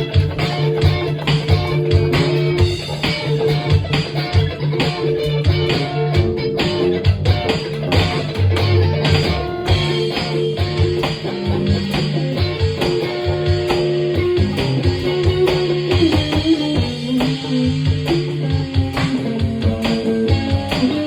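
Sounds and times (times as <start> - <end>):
band playing instrumental jam: 0.0 - 21.0.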